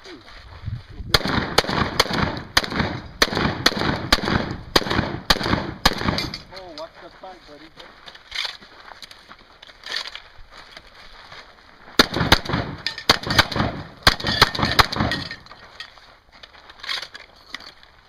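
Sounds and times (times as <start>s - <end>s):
shotgun shots: 1.1s - 6.5s, 12.0s - 15.4s.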